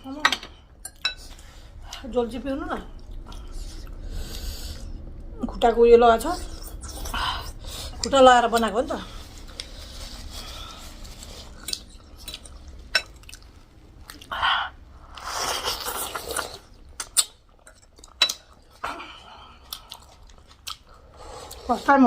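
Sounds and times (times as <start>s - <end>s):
slurping: 15.0s - 17.3s.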